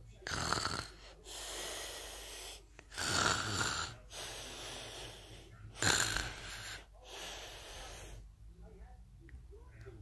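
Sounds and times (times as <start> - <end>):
quiet breathing: 0.0 - 8.9
person snoring: 0.2 - 4.6, 5.8 - 6.9.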